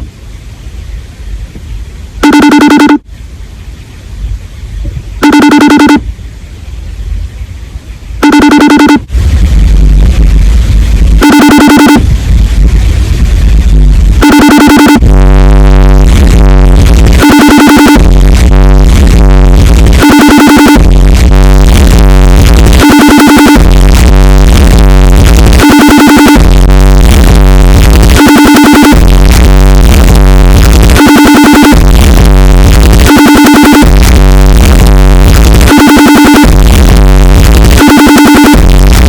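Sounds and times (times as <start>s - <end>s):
distorted phone ringtone with booming bass: 2.2s - 3.1s, 5.2s - 6.0s, 8.2s - 10.3s, 11.0s - 12.4s, 13.3s - 39.0s.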